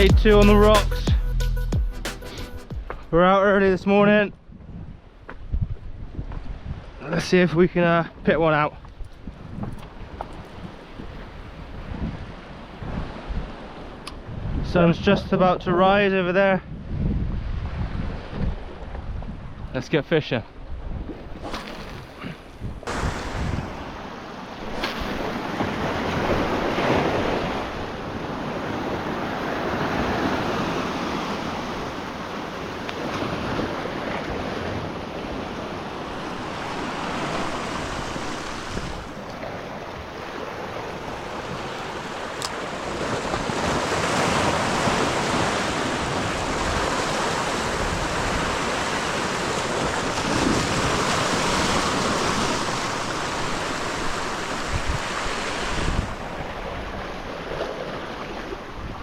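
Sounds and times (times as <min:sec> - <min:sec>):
wind buffeting microphone: 0:03.7 - 0:07.1, 0:08.1 - 0:19.8, 0:20.5 - 0:59.0
waves breaking on rocks: 0:20.9 - 0:59.0.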